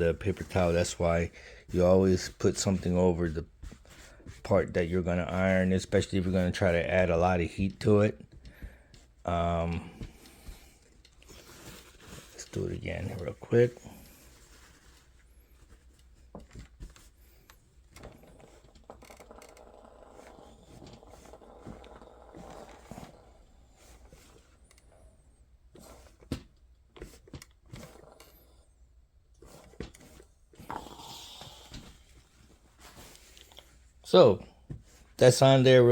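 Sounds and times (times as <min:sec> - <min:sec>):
rustling of paper and fabric: 0:00.0 - 0:07.0, 0:07.6 - 0:28.5.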